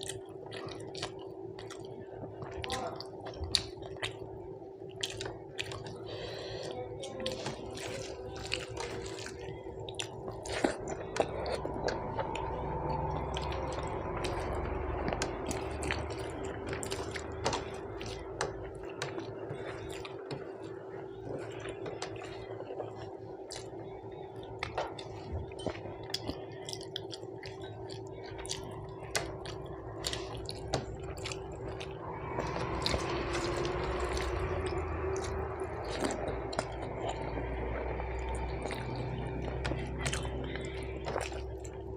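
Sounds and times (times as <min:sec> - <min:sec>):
steady low hum: 0:00.0 - 0:41.9
wet chewing and mouth clicks: 0:00.0 - 0:41.9.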